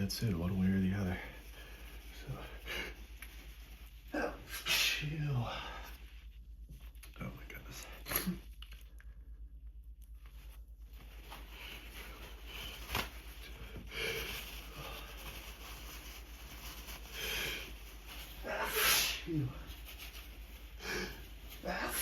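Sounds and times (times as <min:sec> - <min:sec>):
low steady hum: 0:00.0 - 0:22.0
person breathing hard: 0:13.4 - 0:15.6, 0:17.0 - 0:19.7, 0:20.7 - 0:22.0
person sniffling: 0:18.4 - 0:19.7.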